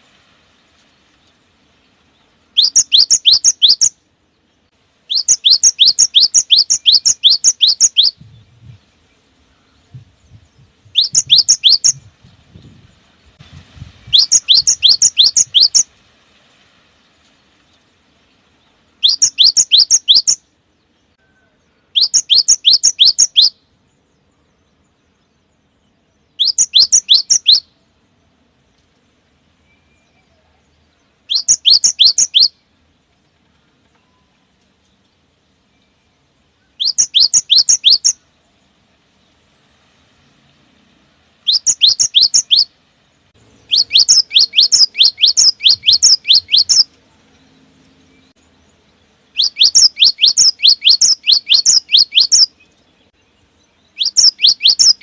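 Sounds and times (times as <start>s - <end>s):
bird singing high whistled notes: 2.4s - 4.0s, 5.1s - 15.9s, 18.9s - 20.5s, 21.2s - 27.9s, 29.6s - 32.6s, 35.6s - 38.4s, 41.4s - 42.8s, 43.5s - 55.0s.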